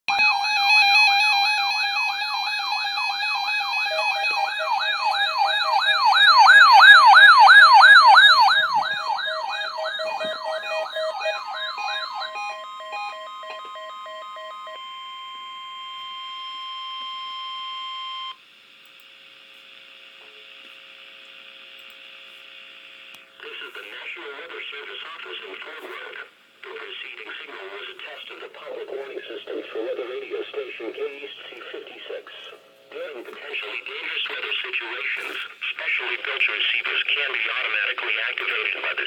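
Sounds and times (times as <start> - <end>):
electronic siren-like wail: 0.1 - 18.4
steady alert tone: 0.2 - 16.1
pulsing beep: 2.2 - 18.4
faint radio hiss: 19.4 - 39.0.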